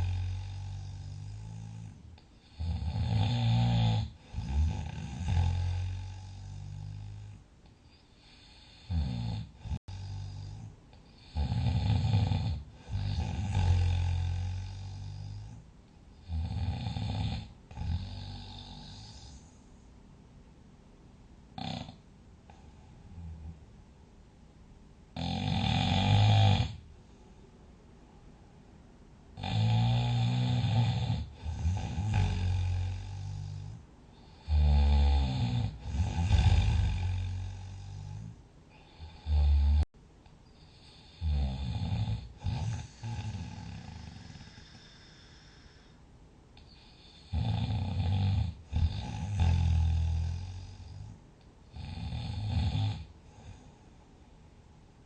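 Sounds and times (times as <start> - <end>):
person snoring loudly: 0.0 - 7.4, 8.2 - 15.6, 16.2 - 19.5, 21.6 - 22.0, 25.2 - 26.8, 29.4 - 39.9, 40.7 - 45.9, 46.8 - 53.6
quiet breathing: 0.0 - 20.5, 21.8 - 23.9, 25.4 - 28.4, 29.3 - 54.9.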